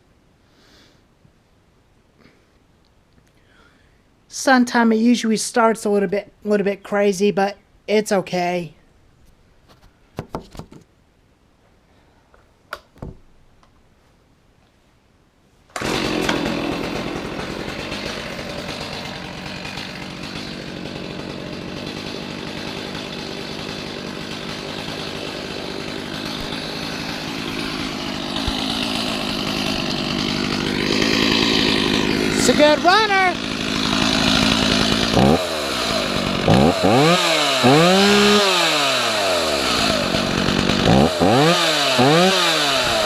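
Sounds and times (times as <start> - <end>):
chainsaw engine running: 15.8 - 43.0.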